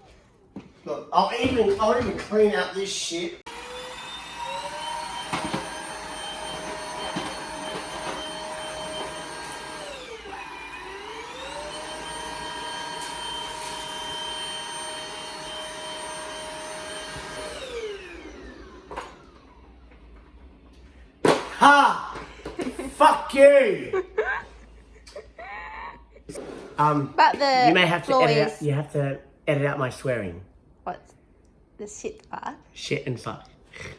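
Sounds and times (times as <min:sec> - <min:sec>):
vacuum cleaner motor whine: 0:03.5 - 0:20.5.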